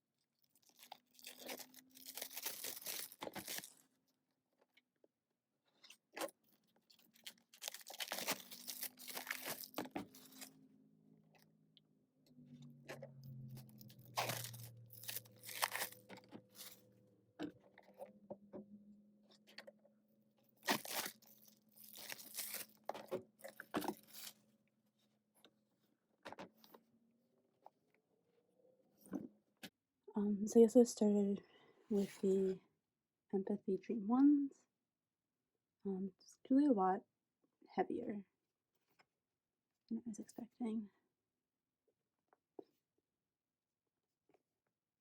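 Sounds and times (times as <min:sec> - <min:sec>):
plastic wrap crinkling and tearing: 0:00.5 - 0:03.8, 0:06.8 - 0:10.5, 0:13.4 - 0:16.9, 0:20.6 - 0:24.4.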